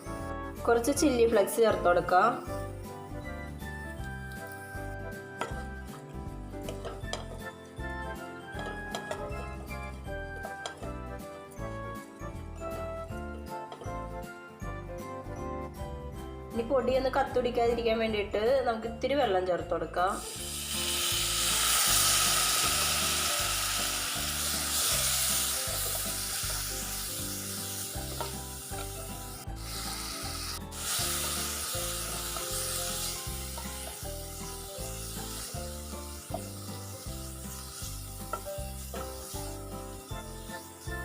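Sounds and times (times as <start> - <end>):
background music with steady beat: 0.0 - 41.0
oil sizzling in a pan: 20.1 - 41.0
water splashing into hot oil: 20.2 - 28.3.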